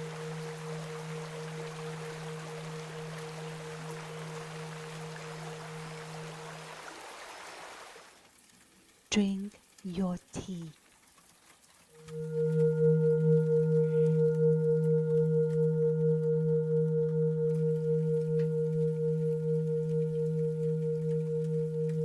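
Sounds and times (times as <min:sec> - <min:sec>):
singing bowl ringing: 0:00.0 - 0:06.8, 0:12.0 - 0:22.0.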